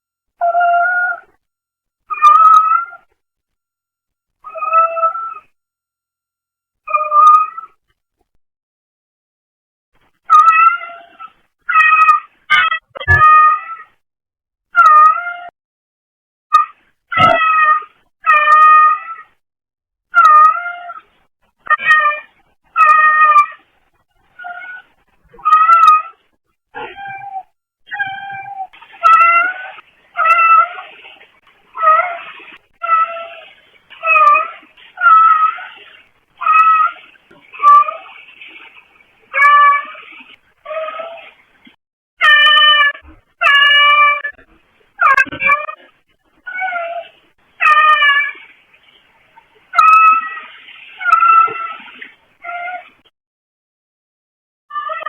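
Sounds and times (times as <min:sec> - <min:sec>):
cat meowing: 0:04.5 - 0:05.5, 0:11.7 - 0:13.9, 0:20.2 - 0:21.0, 0:24.4 - 0:26.2, 0:26.8 - 0:30.8, 0:32.8 - 0:37.0, 0:42.2 - 0:44.4, 0:45.0 - 0:45.8, 0:46.5 - 0:48.4, 0:49.8 - 0:53.0, 0:54.7 - 0:55.0.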